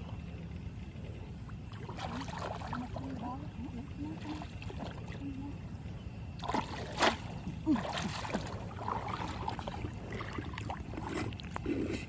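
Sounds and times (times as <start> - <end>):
water sloshing and splashing: 1.4 - 5.6, 6.3 - 12.0.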